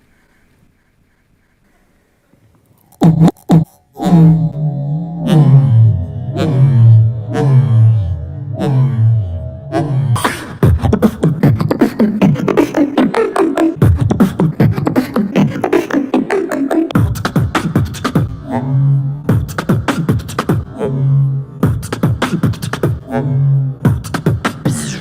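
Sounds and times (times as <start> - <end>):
gliding vocal tones: 2.7 - 25.0
beatboxing clicks and snare hits: 2.8 - 3.9, 10.6 - 18.4, 19.3 - 20.7, 21.6 - 23.1, 23.8 - 25.0
beatboxing bass hum: 2.8 - 4.6, 5.3 - 25.0.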